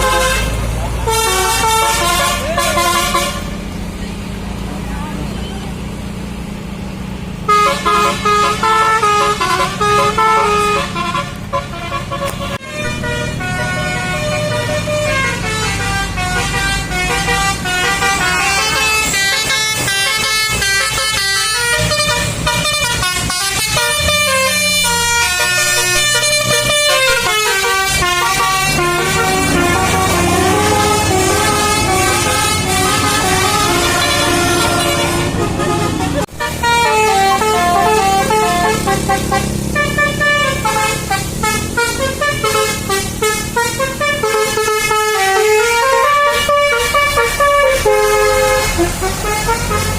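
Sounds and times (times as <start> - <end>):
multi-tone air horn melody: 0.0 - 3.6, 7.5 - 49.9
low engine hum: 21.4 - 49.9.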